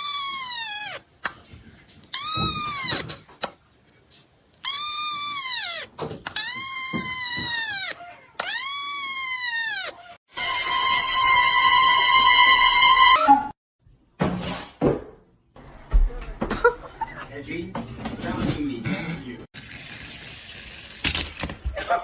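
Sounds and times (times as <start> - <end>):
cat yowling: 0.0 - 1.1, 2.1 - 3.2, 4.6 - 10.2.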